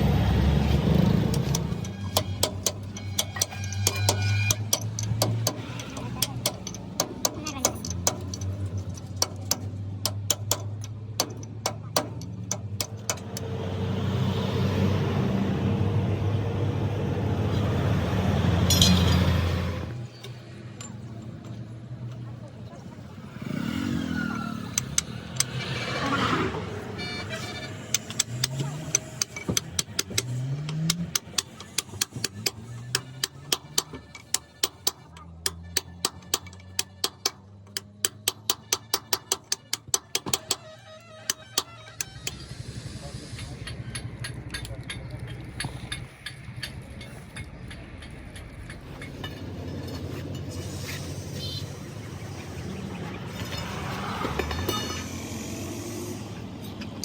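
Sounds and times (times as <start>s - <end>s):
vehicle engine humming: 0.0s - 57.0s
sharp metallic knocks: 0.8s - 13.6s, 18.7s - 19.6s, 27.0s - 42.5s.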